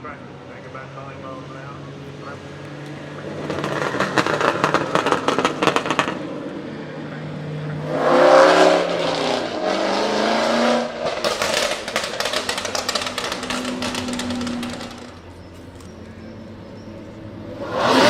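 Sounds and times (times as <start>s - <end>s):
car engine revving: 1.6s - 18.0s
exhaust crackling and popping: 2.8s - 6.6s, 10.8s - 16.2s.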